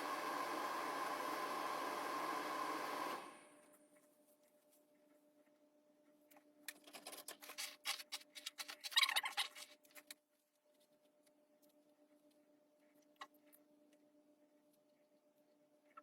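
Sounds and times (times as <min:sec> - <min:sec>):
handling rustles and clicks: 0:03.6 - 0:14.0
low steady hum: 0:09.8 - 0:16.0.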